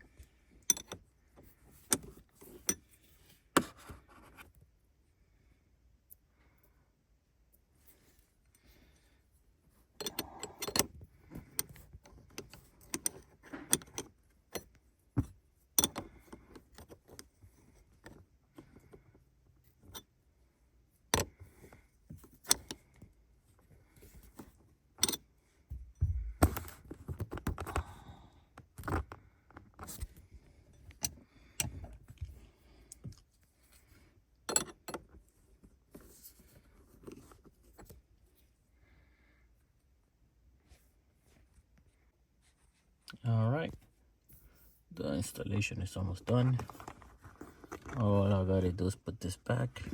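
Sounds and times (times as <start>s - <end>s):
gear shifter clicks and rattles: 0.6s - 1.1s, 10.0s - 17.3s, 21.2s - 21.5s, 22.1s - 23.1s, 24.1s - 25.2s, 30.9s - 33.3s.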